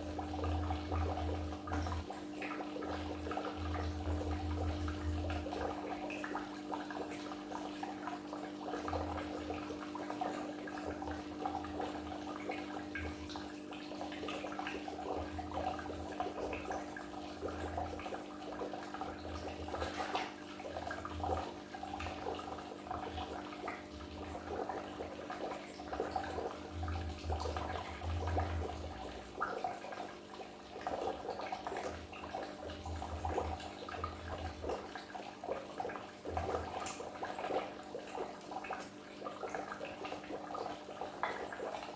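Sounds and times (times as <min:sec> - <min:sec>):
steady low hum: 0:00.0 - 0:29.6
aquarium water bubbling: 0:00.0 - 0:41.9
small water splashes: 0:00.0 - 0:41.9.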